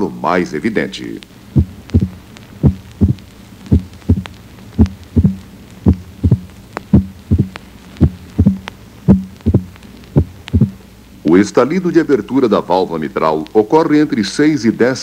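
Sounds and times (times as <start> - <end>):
high-pitched heart valve snap: 1.2 - 10.9
heartbeat sounds: 1.5 - 10.8.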